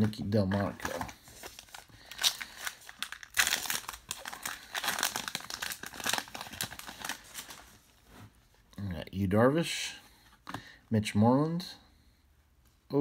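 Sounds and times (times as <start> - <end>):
plastic wrapper crinkling: 0.0 - 8.0.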